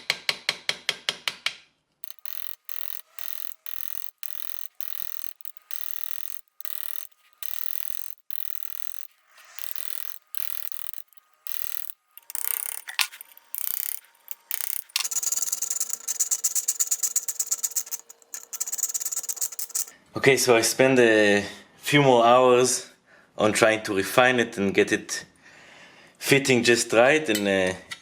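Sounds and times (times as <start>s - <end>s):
hand tool rasping on brass: 2.0s - 19.9s.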